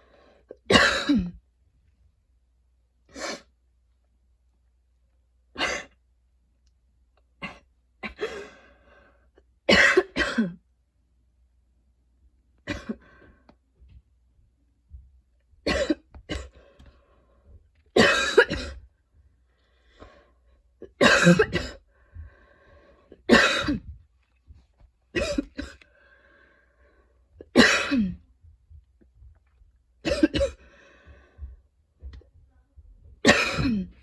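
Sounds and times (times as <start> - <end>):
woman coughing: 0.6 - 1.4, 7.4 - 8.5, 9.7 - 10.6, 12.7 - 13.0, 15.7 - 16.5, 18.0 - 18.8, 20.8 - 21.8, 23.2 - 23.9, 25.2 - 25.8, 27.5 - 28.2, 30.0 - 30.6, 33.2 - 34.0.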